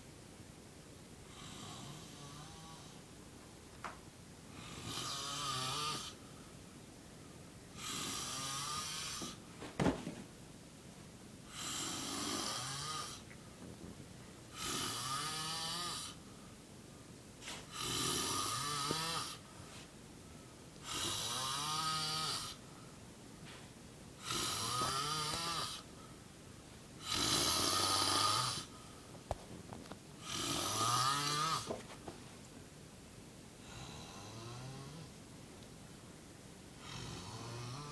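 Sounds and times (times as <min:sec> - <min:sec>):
man snoring heavily: 0:01.3 - 0:03.0, 0:04.6 - 0:06.2, 0:07.8 - 0:09.4, 0:11.5 - 0:13.2, 0:14.6 - 0:16.2, 0:17.6 - 0:19.4, 0:20.8 - 0:22.6, 0:24.2 - 0:25.9, 0:27.0 - 0:28.7, 0:30.2 - 0:31.7, 0:33.6 - 0:35.1, 0:36.8 - 0:37.9.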